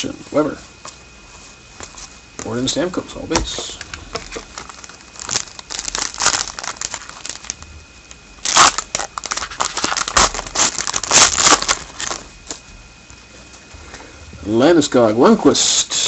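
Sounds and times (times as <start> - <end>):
foil wrapper crinkling and tearing: 4.0 - 7.7, 8.4 - 12.6.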